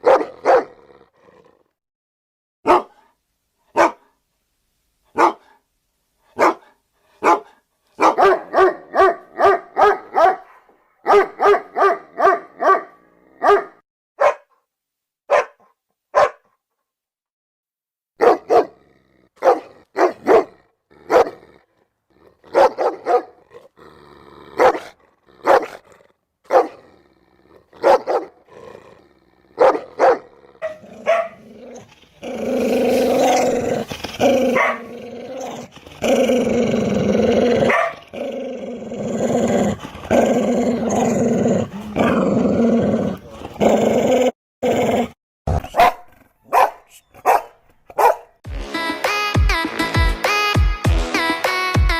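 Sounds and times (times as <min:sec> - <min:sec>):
dogs barking: 0:00.0 - 0:00.8, 0:02.7 - 0:03.0, 0:03.8 - 0:04.1, 0:05.2 - 0:05.5, 0:06.4 - 0:14.5, 0:15.3 - 0:16.5, 0:18.2 - 0:18.8, 0:19.4 - 0:21.4, 0:22.5 - 0:23.4, 0:24.6 - 0:25.8, 0:26.5 - 0:26.8, 0:27.8 - 0:28.4, 0:29.6 - 0:31.9, 0:34.3 - 0:35.0, 0:37.6 - 0:38.2, 0:45.6 - 0:48.4
dog growling: 0:00.4 - 0:01.8, 0:18.7 - 0:46.5.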